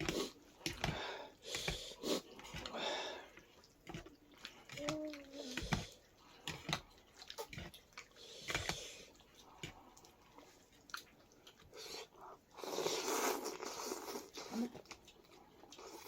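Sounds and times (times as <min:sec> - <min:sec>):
mouth clicks and chewing: 0:00.0 - 0:16.0
person slurping soup: 0:11.7 - 0:14.9.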